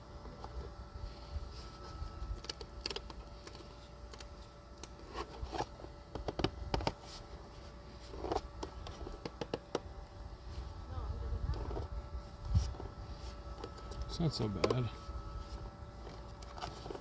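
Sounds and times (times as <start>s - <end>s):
faint steady hum: 0.0s - 17.0s
plastic helmet clicks and rustles: 1.7s - 7.4s, 8.0s - 10.0s, 12.5s - 17.0s.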